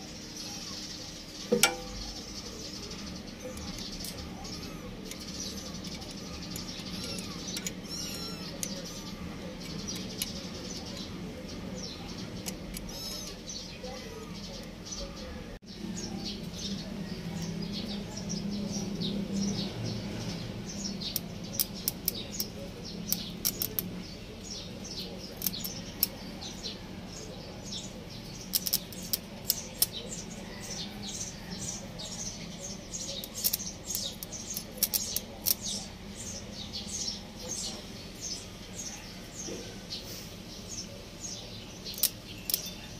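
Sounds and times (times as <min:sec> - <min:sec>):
birds chirping: 0:00.0 - 0:42.9
sharp clicks: 0:28.4 - 0:30.0, 0:41.9 - 0:42.7.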